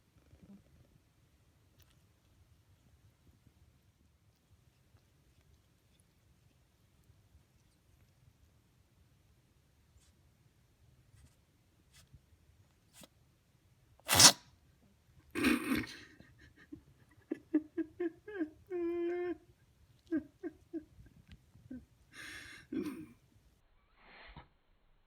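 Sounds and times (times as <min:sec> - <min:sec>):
cat sneezing: 0:14.0 - 0:14.4, 0:15.4 - 0:16.0.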